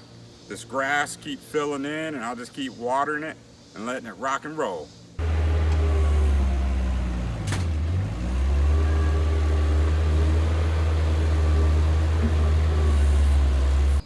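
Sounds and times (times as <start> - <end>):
engine humming: 5.2 - 14.0.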